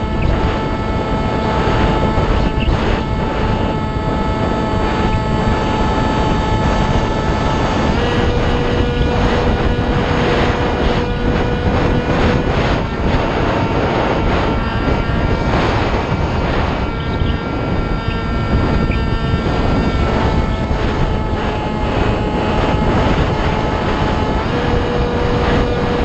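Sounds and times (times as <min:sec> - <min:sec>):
electric motor whine: 0:00.0 - 0:26.0
rushing wind noise: 0:00.0 - 0:26.0.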